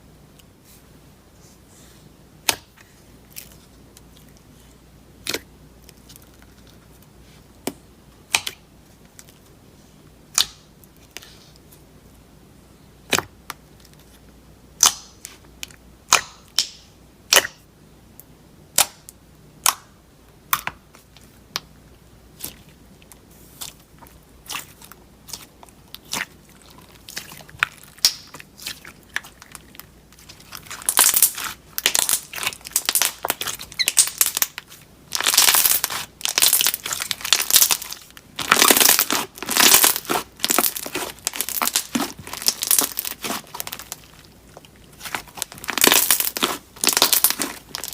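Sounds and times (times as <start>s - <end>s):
crinkly slime crackling: 22.3s - 47.9s.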